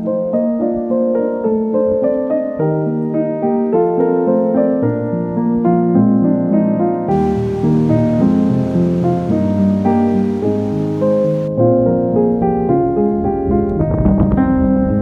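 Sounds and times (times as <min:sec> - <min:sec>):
keyboard playing short notes: 0:07.1 - 0:11.5.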